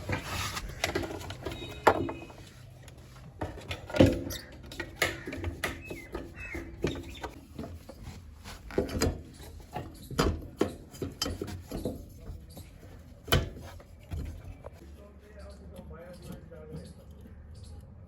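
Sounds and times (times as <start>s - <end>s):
tools and metal parts clinking: 3.4s - 14.8s, 15.4s - 17.8s.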